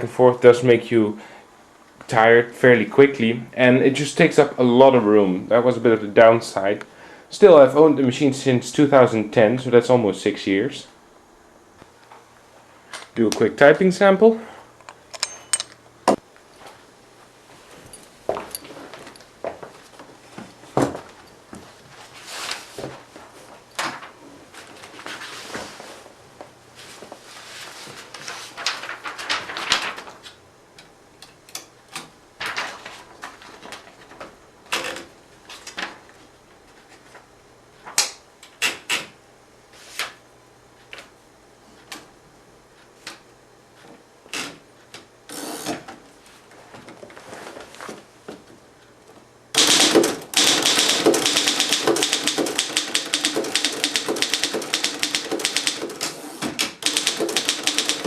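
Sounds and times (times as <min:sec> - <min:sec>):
manual typewriter clacking: 0:49.6 - 0:58.0.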